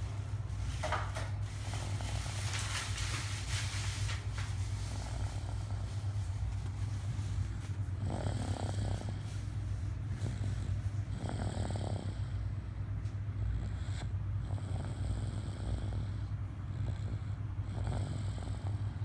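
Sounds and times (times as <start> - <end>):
snoring: 8.0 - 9.3, 10.2 - 12.6, 13.5 - 19.0.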